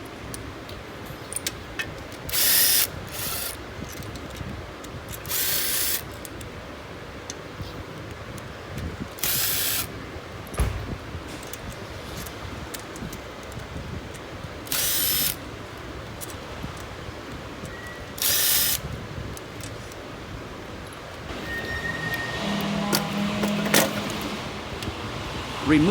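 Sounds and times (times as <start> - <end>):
impact driver spinning bolts: 1.8 - 4.4, 5.1 - 6.4, 9.1 - 10.6, 11.4 - 15.4, 18.1 - 18.8.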